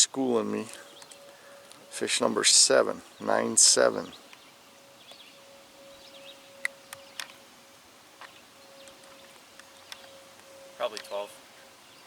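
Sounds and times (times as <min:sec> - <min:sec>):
faint steady hum: 0:00.0 - 0:12.0
faint bird chirps: 0:03.1 - 0:07.5, 0:08.2 - 0:12.0
sharp light clicks: 0:06.6 - 0:07.4, 0:08.2 - 0:11.2.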